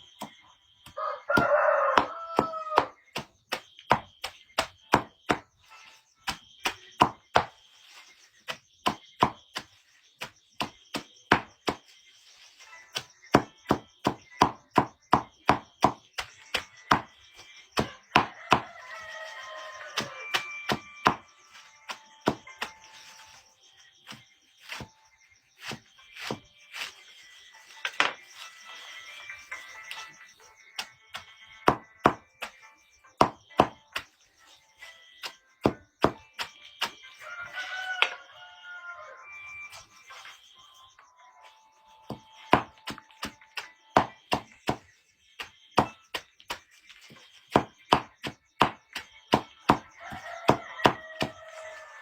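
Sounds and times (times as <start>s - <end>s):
chopping strikes: 0.2s - 5.4s, 8.5s - 11.9s, 17.8s - 18.8s, 20.0s - 22.8s, 25.6s - 26.9s, 30.8s - 32.6s, 33.2s - 34.1s, 35.2s - 37.1s, 42.1s - 51.4s
rooster crowing: 0.9s - 3.0s, 17.8s - 20.8s, 37.1s - 39.4s, 49.8s - 52.0s.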